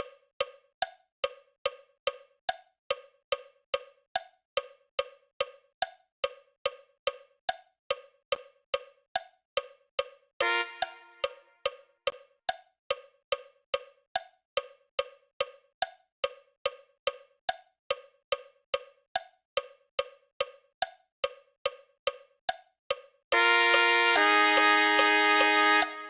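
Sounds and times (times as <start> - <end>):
metronome wood-block clicks: 0.0 - 26.0
sustained brass notes: 10.4 - 11.4, 23.3 - 26.0
short held chord: 23.4 - 26.0.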